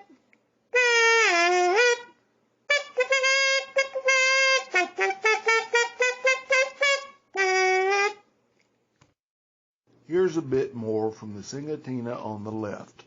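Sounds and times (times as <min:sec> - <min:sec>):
kazoo buzzing melody: 0:00.0 - 0:08.3.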